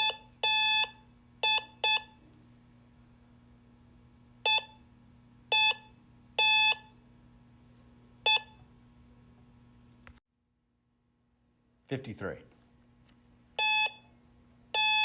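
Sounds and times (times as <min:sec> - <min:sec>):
morse code beeps: 0:00.0 - 0:02.2, 0:04.5 - 0:04.8, 0:05.5 - 0:06.9, 0:08.3 - 0:08.6, 0:13.6 - 0:14.0, 0:14.8 - 0:15.0.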